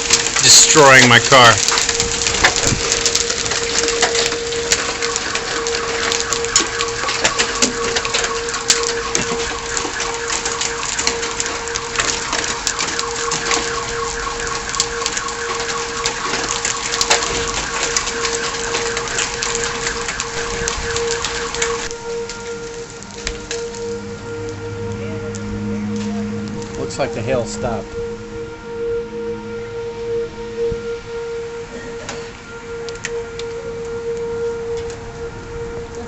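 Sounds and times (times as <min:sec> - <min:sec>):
hail striking a car: 0:00.0 - 0:23.9
higher tone: 0:20.3 - 0:36.0
steady tone: 0:21.9 - 0:35.8.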